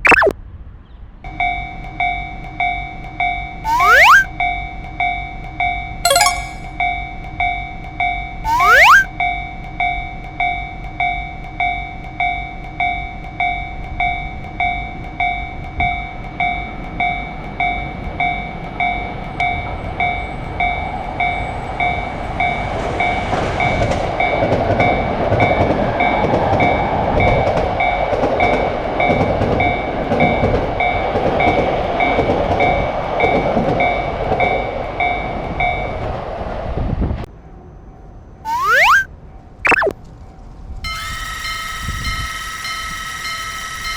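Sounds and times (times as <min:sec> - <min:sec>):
rising whistle-like sweep: 0:03.7 - 0:04.3, 0:08.5 - 0:09.1, 0:38.5 - 0:39.1
railroad crossing bell ringing: 0:40.9 - 0:43.9.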